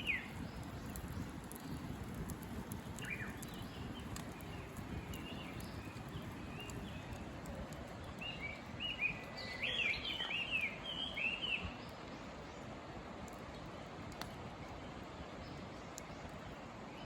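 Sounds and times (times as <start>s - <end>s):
birds chirping: 0.0s - 12.7s
low background noise: 0.0s - 17.0s.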